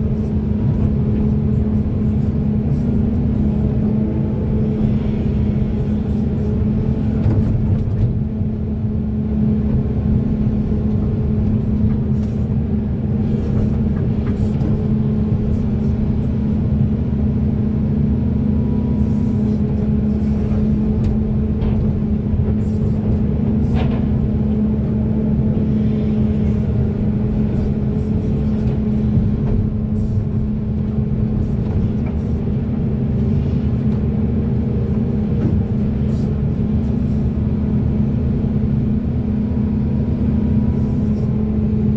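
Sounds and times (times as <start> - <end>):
excavator diesel engine running: 0.0 - 41.9.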